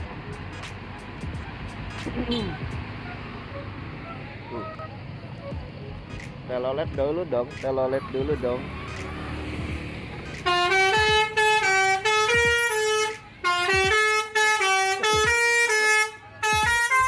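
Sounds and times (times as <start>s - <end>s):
bus musical air horn tune: 2.2s - 5.6s, 10.4s - 17.0s.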